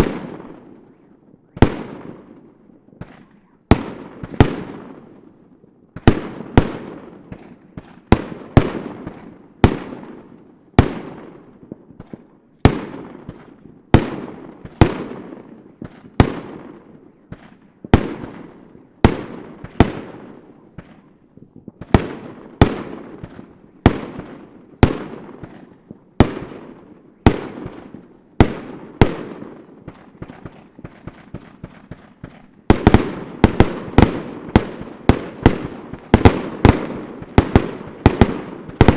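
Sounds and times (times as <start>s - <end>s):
aerial fireworks bursting: 21.8s - 38.9s.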